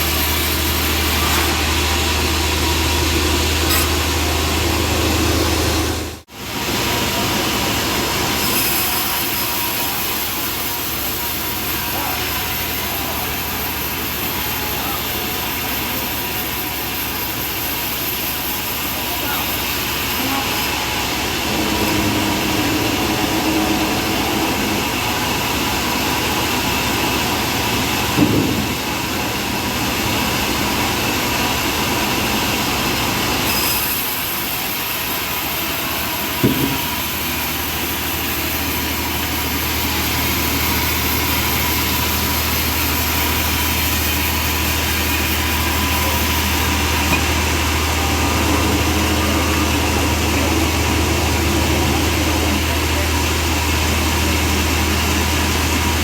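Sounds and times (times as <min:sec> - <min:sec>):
bandsaw mill sawing a log: 0:00.0 - 0:56.0
short knock: 0:36.4 - 0:36.9.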